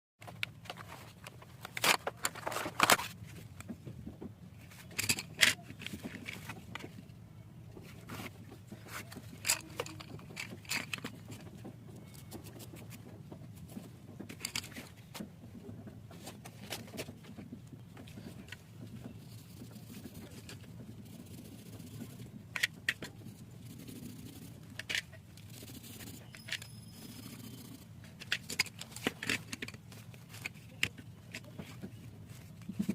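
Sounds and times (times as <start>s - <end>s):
packaging rustling: 0.2s - 3.2s.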